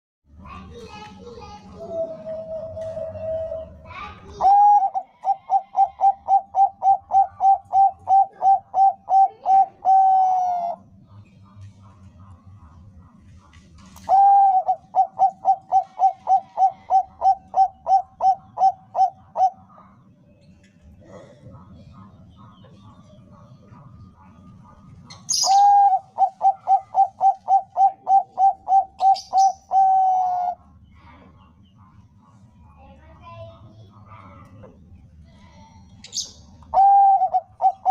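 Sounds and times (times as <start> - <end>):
dove cooing: 1.6 - 11.2, 13.8 - 20.1, 20.9 - 31.3, 36.1 - 37.9.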